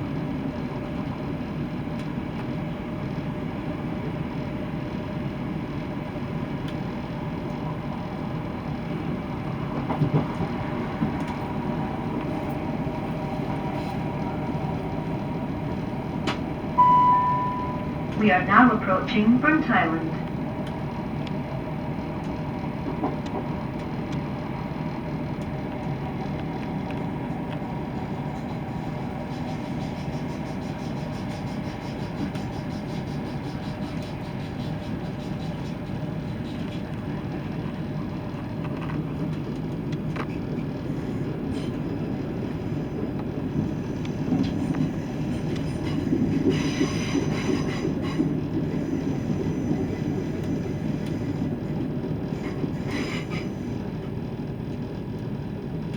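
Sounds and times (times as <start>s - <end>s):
train diesel engine: 0.0s - 55.9s
train howl tones: 3.4s - 22.7s, 23.4s - 38.6s, 40.3s - 53.9s.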